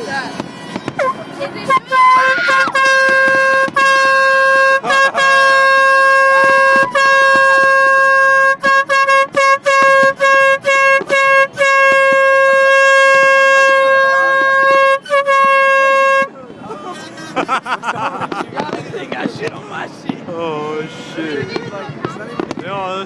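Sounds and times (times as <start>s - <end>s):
air horn blasts and toots: 0.8s - 16.4s.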